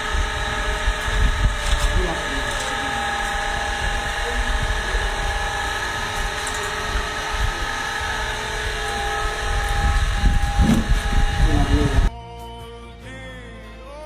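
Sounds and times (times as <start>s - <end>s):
machine hum: 0.0s - 12.1s
music with singing: 12.0s - 14.0s.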